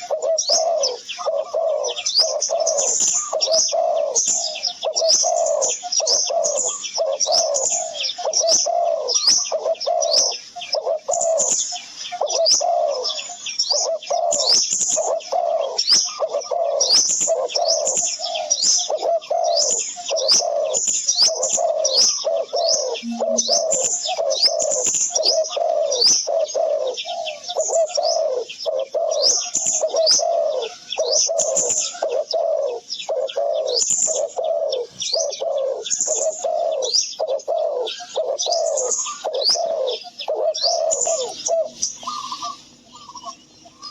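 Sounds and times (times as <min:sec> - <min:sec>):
low repeated bird calls: 0:00.0 - 0:43.9
high bird chirps: 0:22.0 - 0:25.4.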